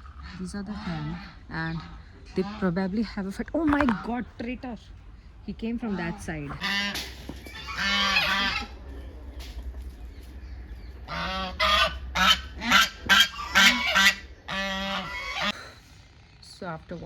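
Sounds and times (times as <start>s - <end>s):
ducks quacking: 0.0s - 4.5s, 5.7s - 9.2s, 10.2s - 15.7s.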